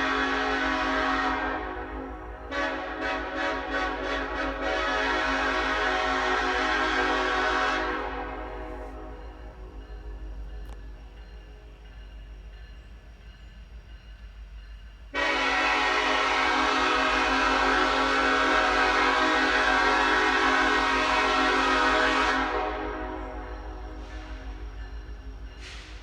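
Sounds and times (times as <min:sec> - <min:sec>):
locomotive air horn blast: 0:00.0 - 0:09.2, 0:15.1 - 0:24.6.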